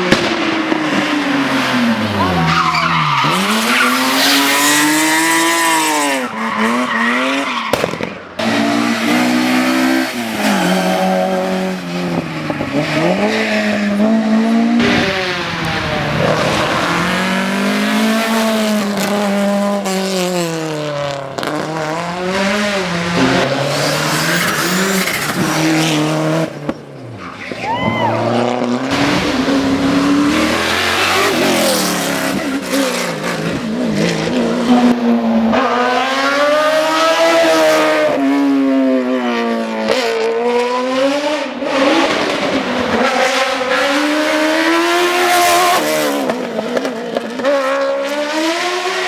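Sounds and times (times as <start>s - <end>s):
race car engines at full throttle: 0.0s - 49.0s
tyres squealing: 1.8s - 4.6s.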